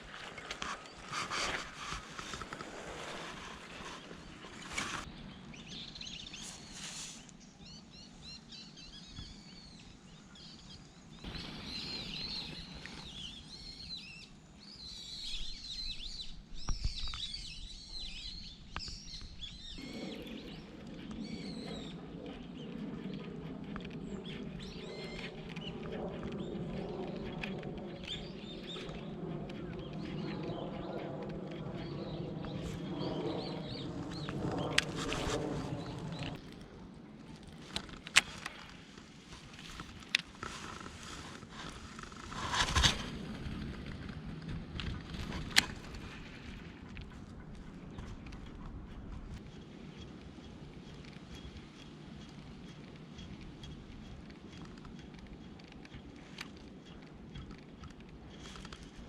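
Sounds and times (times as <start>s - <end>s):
small birds chirping: 3.2s - 36.6s, 45.5s - 59.0s.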